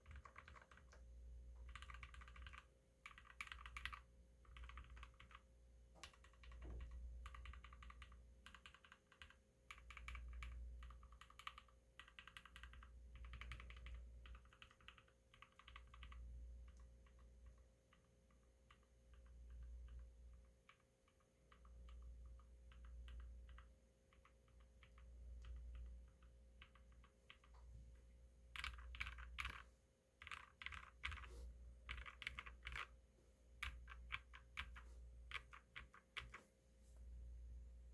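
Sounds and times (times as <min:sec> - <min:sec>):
mechanical keyboard typing: 0:00.0 - 0:01.0, 0:01.6 - 0:05.4, 0:06.0 - 0:17.2, 0:28.6 - 0:29.6, 0:30.2 - 0:31.3, 0:31.9 - 0:32.9, 0:33.6 - 0:36.4.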